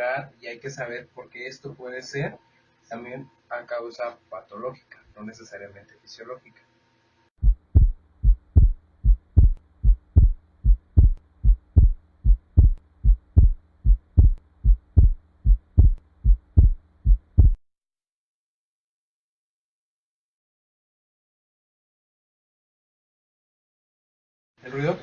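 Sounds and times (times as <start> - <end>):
faint steady hum: 0.2 - 17.6
heartbeat through stethoscope: 7.4 - 17.6.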